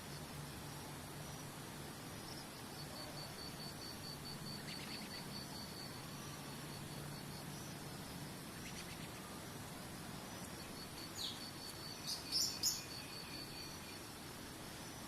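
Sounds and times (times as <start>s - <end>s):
background hiss: 0.0s - 15.0s
high insect trill: 0.0s - 15.0s
bird chirping: 4.4s - 5.4s, 10.4s - 14.0s.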